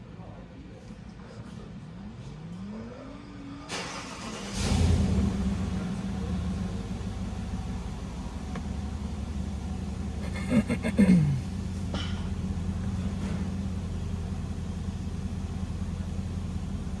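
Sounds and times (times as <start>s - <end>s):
car engine starting and idling: 3.7s - 17.0s.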